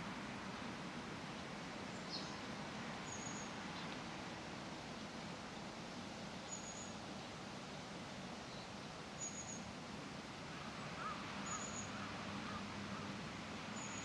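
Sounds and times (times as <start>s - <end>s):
distant traffic hum: 9.7s - 14.0s.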